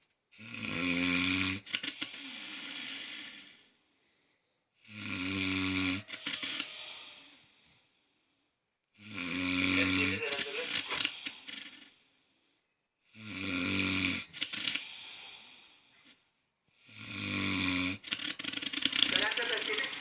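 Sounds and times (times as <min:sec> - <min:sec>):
person snoring: 0:00.4 - 0:03.7, 0:04.8 - 0:07.6, 0:09.0 - 0:11.9, 0:16.8 - 0:20.0.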